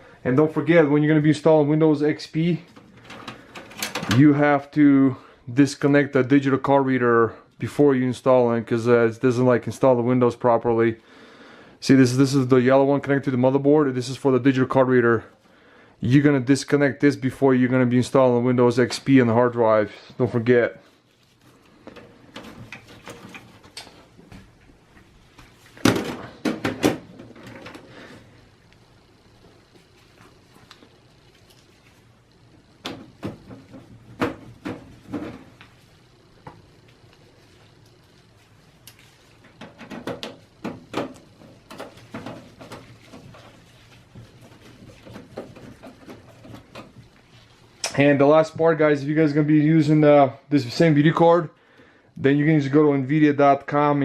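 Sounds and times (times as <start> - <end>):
clicks and knocks on computer case: 25.8 - 27.8.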